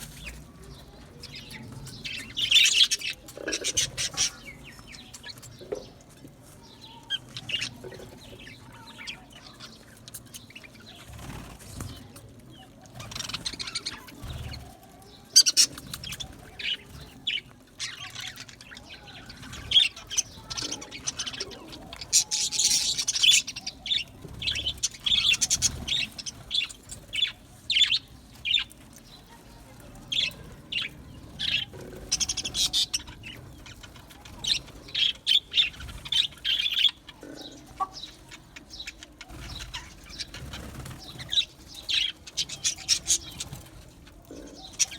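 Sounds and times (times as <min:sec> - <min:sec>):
budgerigars chirping: 0:15.4 - 0:28.8, 0:30.1 - 0:43.6.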